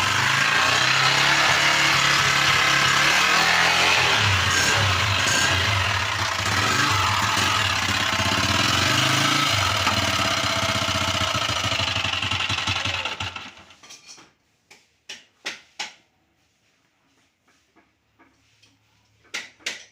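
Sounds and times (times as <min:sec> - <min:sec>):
motorcycle engine idling: 0:00.0 - 0:13.7.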